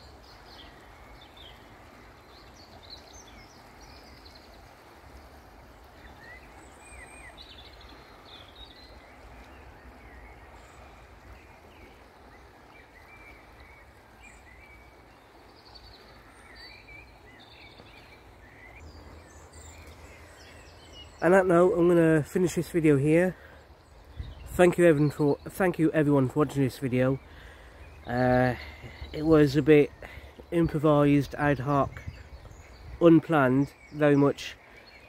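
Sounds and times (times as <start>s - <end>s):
birds chirping: 0.0s - 35.0s.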